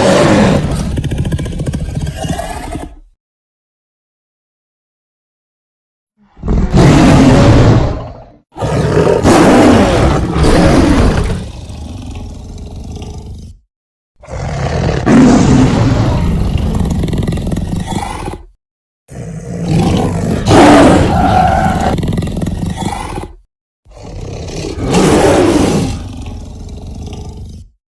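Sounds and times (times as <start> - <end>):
big cat roaring: 0.0 - 1.0, 6.3 - 13.6, 14.2 - 27.8
low growling: 14.2 - 27.8.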